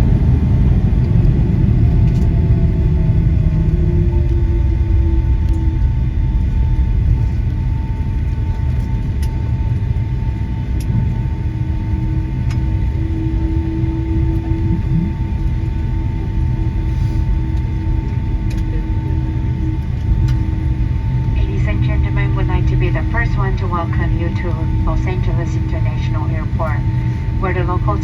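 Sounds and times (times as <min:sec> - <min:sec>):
aircraft cabin low rumble: 0:00.0 - 0:28.0
steady whine: 0:00.0 - 0:28.0
lower tone: 0:10.8 - 0:28.0.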